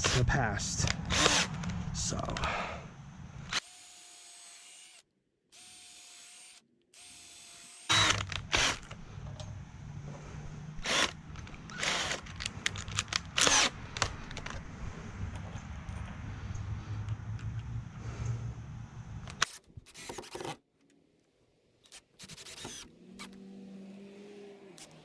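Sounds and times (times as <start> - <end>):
power drill whining: 0.9 - 1.8, 3.4 - 9.6, 10.2 - 14.6, 22.2 - 23.4
power drill loud bursts: 1.0 - 1.6, 5.6 - 9.0, 10.8 - 12.3, 13.4 - 13.8
low motor hum: 7.9 - 19.4.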